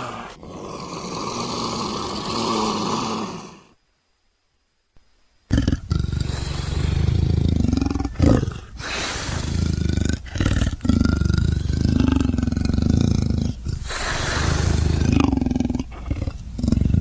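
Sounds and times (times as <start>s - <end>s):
big cat roaring and growling: 5.5s - 17.0s.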